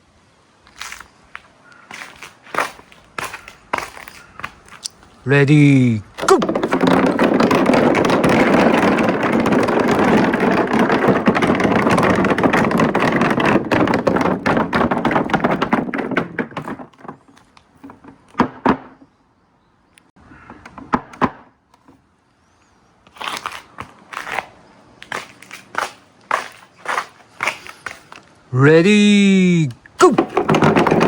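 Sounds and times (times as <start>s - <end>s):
marbles rattling down marble run: 6.2s - 16.9s.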